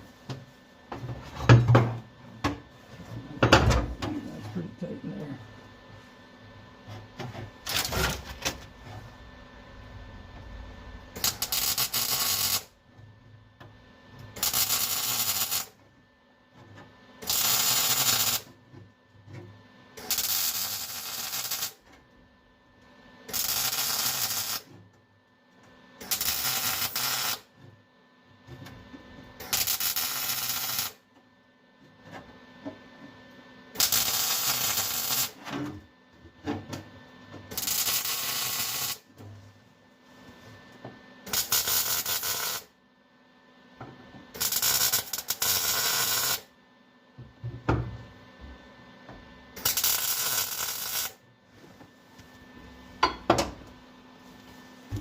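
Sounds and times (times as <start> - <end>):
welder crackling bursts: 7.7 - 8.0, 11.2 - 12.7, 14.4 - 15.8, 17.2 - 18.5, 20.0 - 21.8, 23.3 - 24.7, 26.0 - 27.5, 29.4 - 31.0, 33.8 - 35.4, 37.5 - 39.1, 41.3 - 42.7, 44.4 - 46.5, 49.6 - 51.2.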